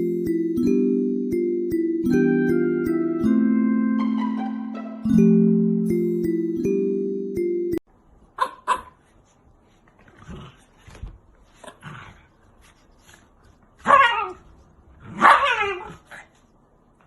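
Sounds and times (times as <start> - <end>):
puppy yipping: 13.8 - 14.4.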